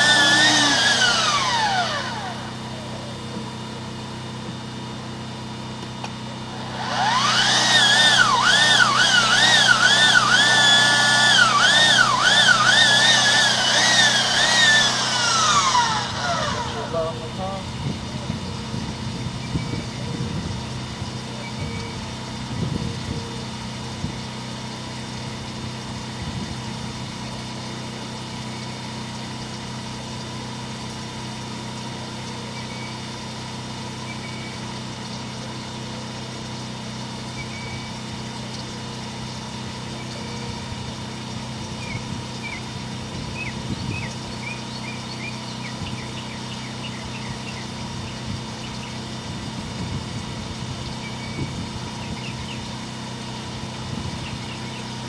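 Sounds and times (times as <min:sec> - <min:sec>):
motor humming: 0:00.0 - 0:55.0
bird chirps: 0:43.4 - 0:49.0.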